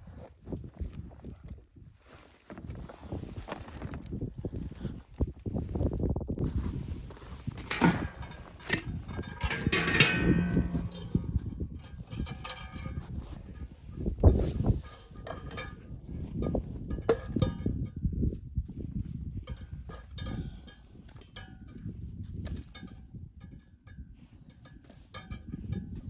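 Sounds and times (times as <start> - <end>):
low steady rumble: 7.7 - 11.9
light metallic clinks and knocks: 7.7 - 13.7, 14.3 - 18.0, 22.5 - 26.0.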